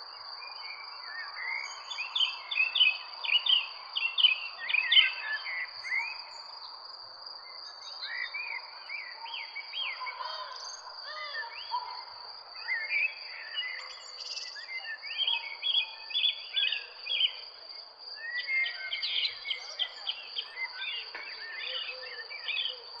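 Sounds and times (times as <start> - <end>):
birds chirping and singing: 18.2 - 23.0.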